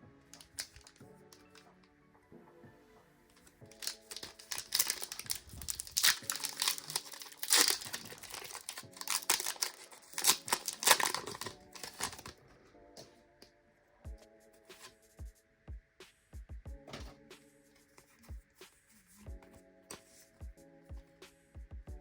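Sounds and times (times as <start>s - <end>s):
foil wrapper crinkling and tearing: 0.4s - 1.6s, 3.7s - 12.3s.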